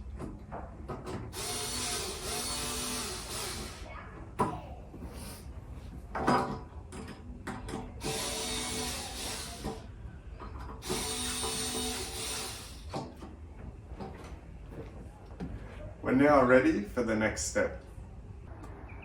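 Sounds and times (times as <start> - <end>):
power screwdriver running: 1.4 - 3.8, 8.0 - 9.8, 10.8 - 12.9.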